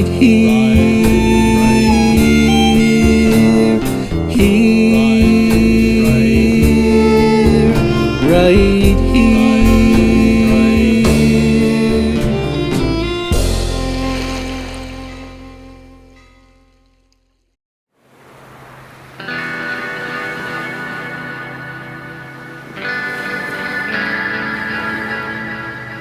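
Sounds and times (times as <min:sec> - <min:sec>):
singing with instrumental backing: 0:00.0 - 0:15.6.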